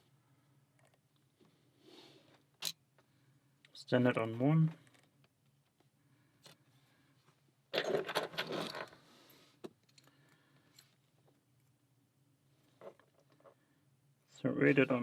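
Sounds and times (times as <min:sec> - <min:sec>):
metal lock parts clinking: 0:07.7 - 0:09.0.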